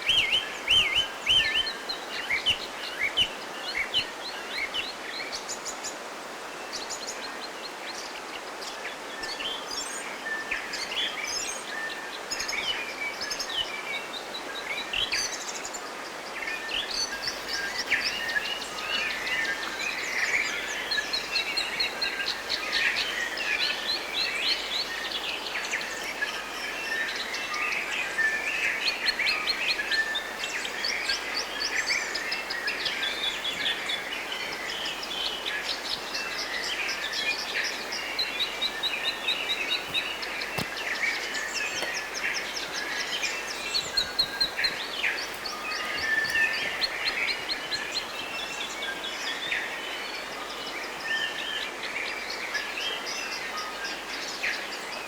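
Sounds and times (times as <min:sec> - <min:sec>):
birds chirping and trilling: 0:32.5 - 0:50.2.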